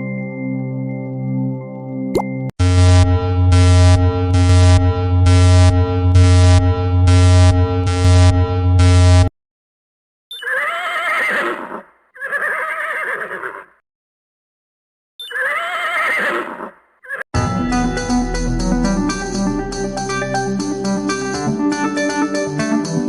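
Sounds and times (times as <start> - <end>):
pulsing electronic tone: 2.6 - 9.3
horse whinnying: 10.3 - 13.8, 15.2 - 17.2.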